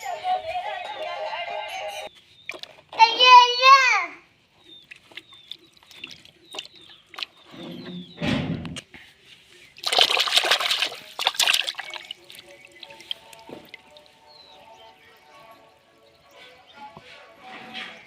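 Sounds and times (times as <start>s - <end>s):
water splashing and sloshing: 2.2s - 3.0s, 4.4s - 16.6s.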